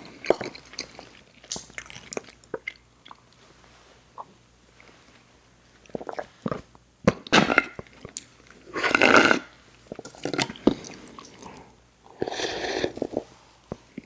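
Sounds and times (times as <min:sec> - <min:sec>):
wet mouth smacks and clicks: 0:01.5 - 0:03.2.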